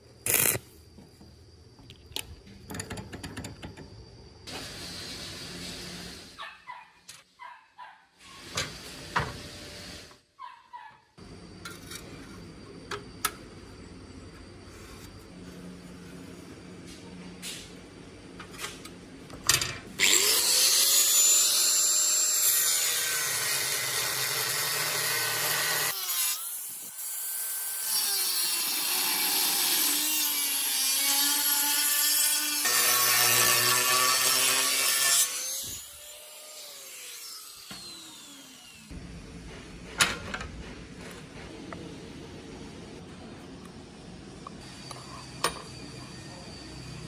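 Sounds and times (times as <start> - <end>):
handheld power tool cutting: 0.3 - 0.6, 20.0 - 39.0.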